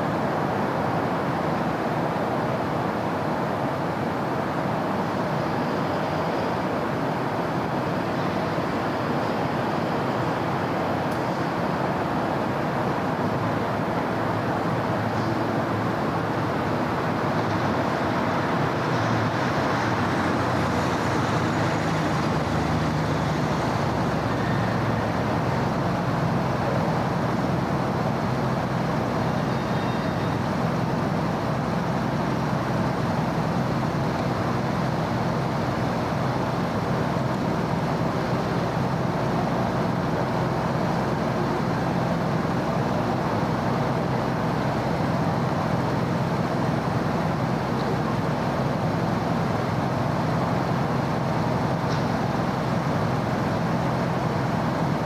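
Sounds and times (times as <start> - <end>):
city road traffic: 0.0 - 55.0.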